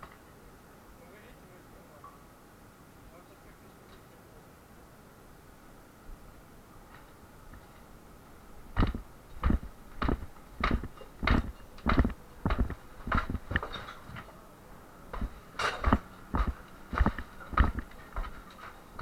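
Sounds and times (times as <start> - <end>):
sharp knocks and thuds: 8.8 - 13.8, 15.1 - 18.4.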